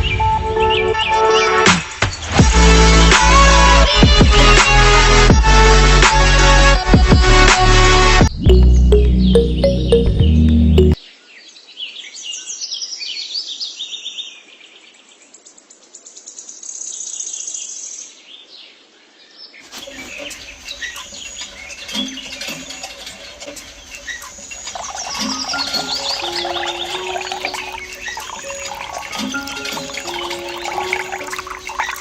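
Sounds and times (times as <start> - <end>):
small birds chirping in trills: 11.0 - 32.0.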